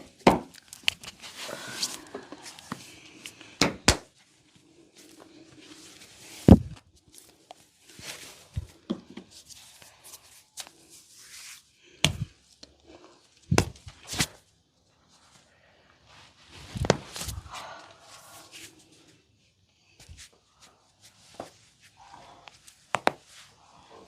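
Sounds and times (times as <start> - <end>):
hands slapping body: 3.6 - 4.1, 12.0 - 12.3, 13.5 - 14.3, 16.8 - 17.4, 22.9 - 23.2.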